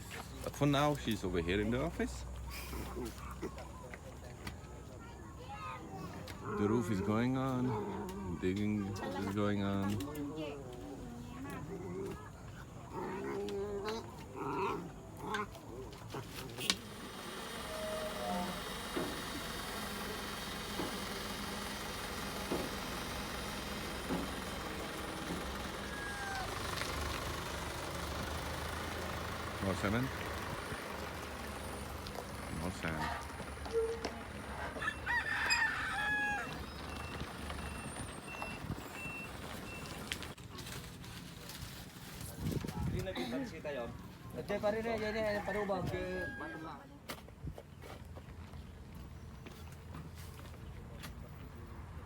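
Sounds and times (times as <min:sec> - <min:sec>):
engine running: 0:15.0 - 0:42.2
short engine knock: 0:18.6 - 0:34.9
rooster crowing: 0:25.6 - 0:26.6, 0:34.6 - 0:37.1, 0:45.0 - 0:46.8.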